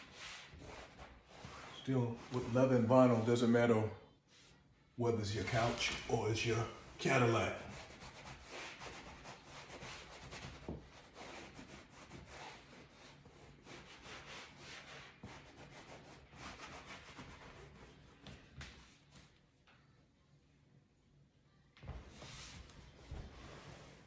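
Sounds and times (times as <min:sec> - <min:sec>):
cloth wiping leather upholstery: 0:00.0 - 0:03.2, 0:06.8 - 0:18.3, 0:22.2 - 0:24.0.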